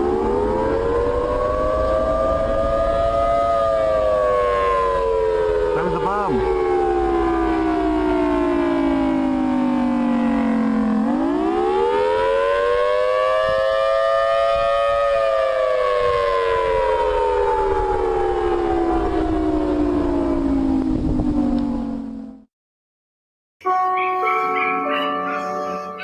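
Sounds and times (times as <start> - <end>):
siren wailing: 0.0 - 9.2, 23.6 - 26.0.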